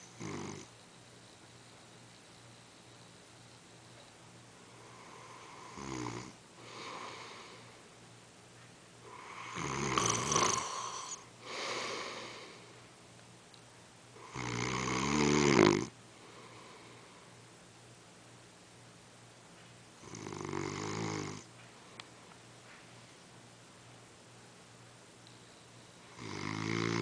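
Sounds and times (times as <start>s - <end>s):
man snoring: 0.2s - 0.7s, 4.9s - 7.6s, 9.1s - 12.6s, 14.2s - 15.9s, 20.0s - 21.5s, 26.1s - 27.0s
soft breaths: 6.5s - 8.0s, 8.6s - 13.0s, 16.0s - 17.5s.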